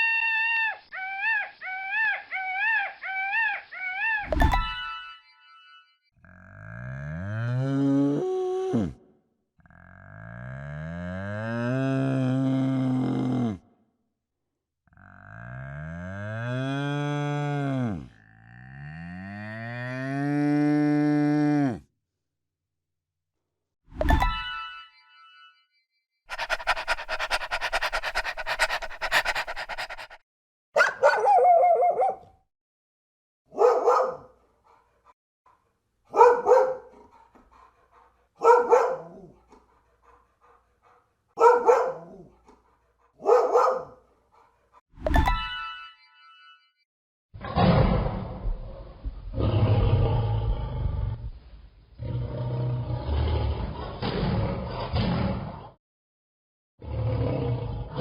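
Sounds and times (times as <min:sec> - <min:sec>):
dog barking: 0:26.3 - 0:30.2, 0:30.8 - 0:32.4, 0:33.5 - 0:44.8.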